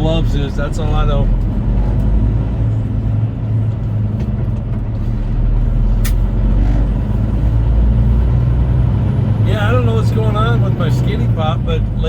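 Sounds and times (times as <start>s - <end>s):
truck diesel engine running: 0.0s - 12.0s
tyre and road noise: 0.0s - 12.0s
sharp click: 6.0s - 6.3s.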